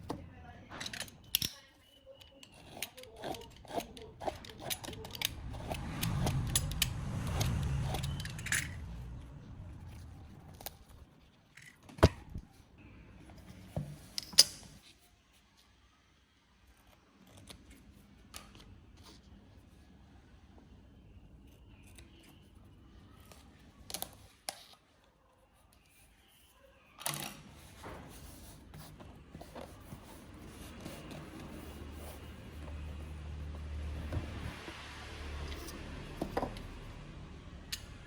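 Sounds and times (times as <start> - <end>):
low rubbing rumble: 5.0 - 11.2.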